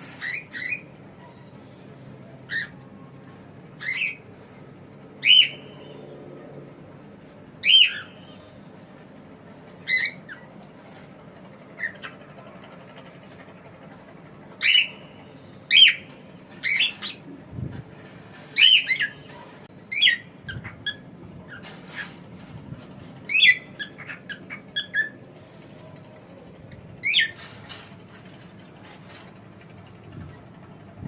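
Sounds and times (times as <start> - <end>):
cockatiel chirping and whistling: 5.2 - 5.6.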